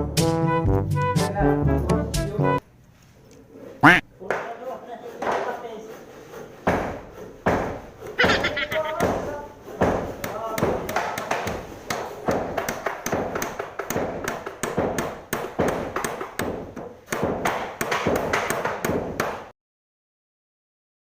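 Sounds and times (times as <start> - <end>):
rapid sharp taps and knocks: 6.5 - 19.5.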